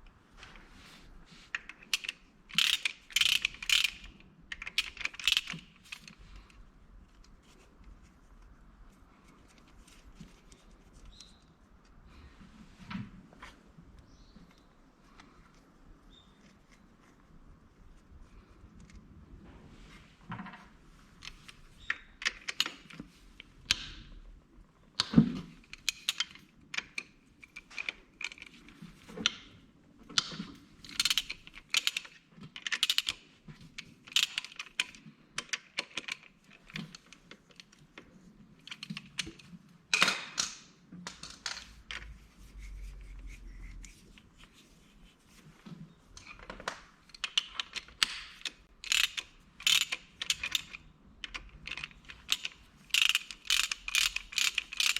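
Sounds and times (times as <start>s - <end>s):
metallic clicks of tools: 1.6s - 6.5s, 46.2s - 54.9s.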